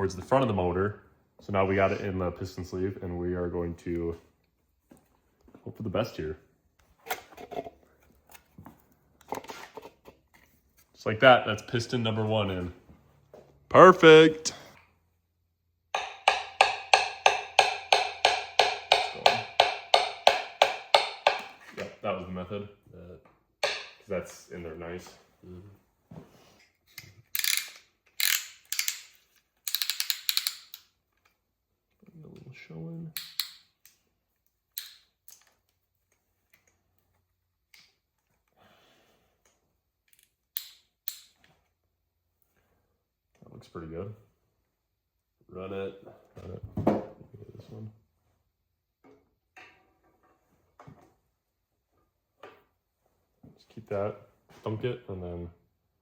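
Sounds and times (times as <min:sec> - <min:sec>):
metal tools clicking and tapping: 0:16.0 - 0:21.6, 0:23.6 - 0:24.0, 0:26.9 - 0:31.4, 0:33.2 - 0:34.0, 0:40.1 - 0:41.4
sharp ringing knocks: 0:16.0 - 0:21.6.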